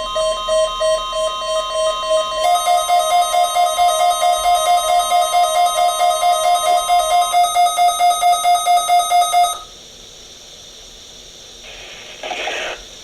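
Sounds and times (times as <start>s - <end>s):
steady alarm tone: 0.0s - 9.7s
low hiss: 9.7s - 13.0s.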